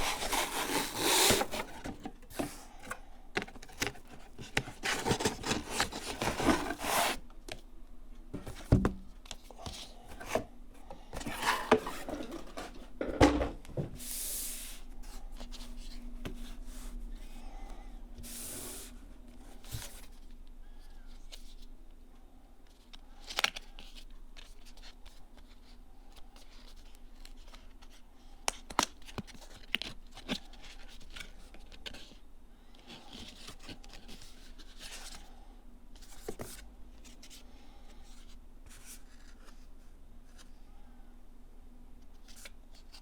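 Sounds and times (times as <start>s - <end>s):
cardboard and plastic rustling: 0.0s - 7.6s, 8.3s - 14.0s.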